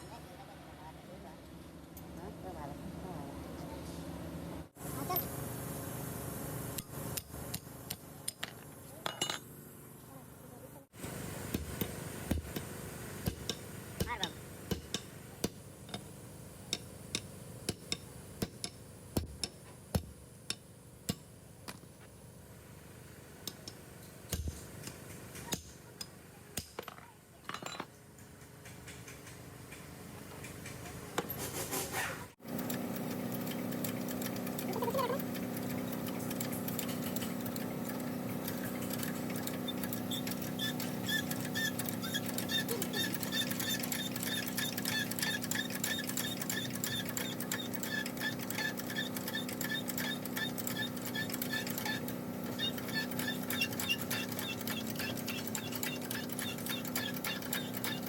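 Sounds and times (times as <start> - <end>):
sharp light clicks and taps: 28.2 - 30.9.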